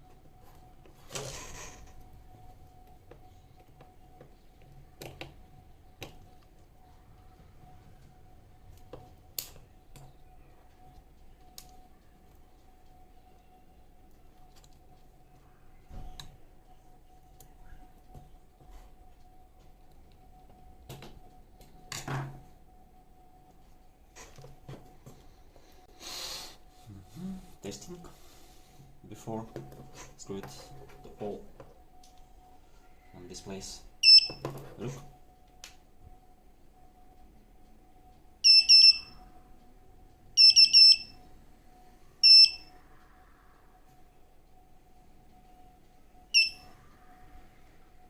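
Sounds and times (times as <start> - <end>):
faint steady whine: 0.0 - 48.0
longer electronic beep: 32.4 - 35.2, 38.3 - 39.7, 40.4 - 48.0
short high electronic beeps: 34.0 - 34.4, 38.4 - 39.2, 40.4 - 41.2, 42.2 - 42.7, 46.4 - 46.7.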